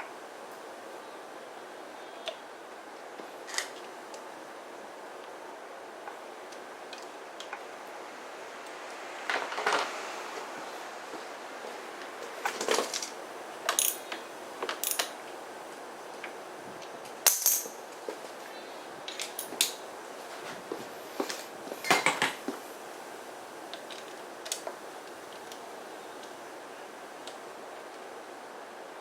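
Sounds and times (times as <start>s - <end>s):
faint hiss: 0.0s - 29.0s
metal parts clinking and knocking: 13.7s - 14.1s, 17.3s - 17.8s.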